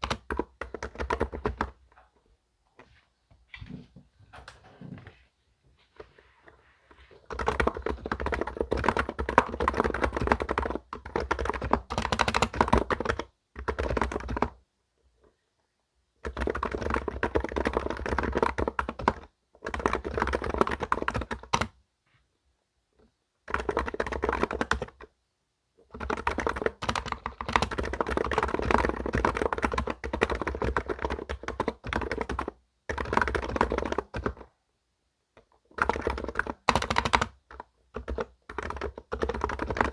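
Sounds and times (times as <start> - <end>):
fast computer keyboard typing: 0.0 - 1.8, 7.2 - 14.6, 16.2 - 21.8, 23.5 - 25.1, 25.9 - 34.5, 35.7 - 39.9.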